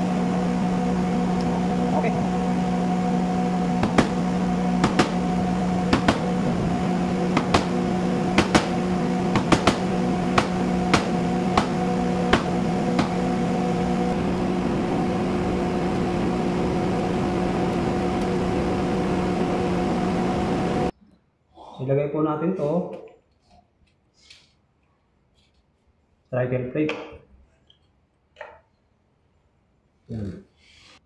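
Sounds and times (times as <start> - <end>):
steady mechanical hum: 0.0 - 21.0
hammer striking chisel: 4.8 - 5.2, 5.9 - 6.3, 8.4 - 13.2.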